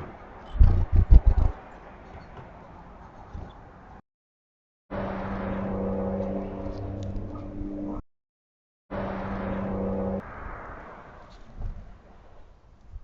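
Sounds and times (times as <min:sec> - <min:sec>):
noisy background: 0:00.0 - 0:03.3.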